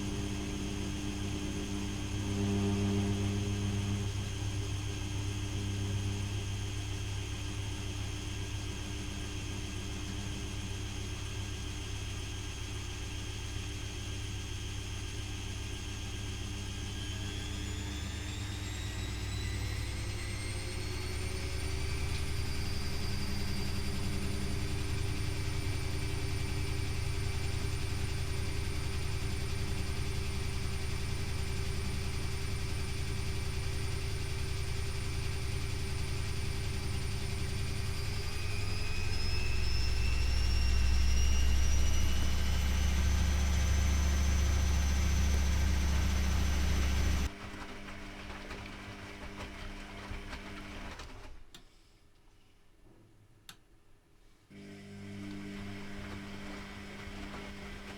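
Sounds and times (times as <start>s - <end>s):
washing machine spinning: 16.3s - 51.5s, 54.6s - 57.9s.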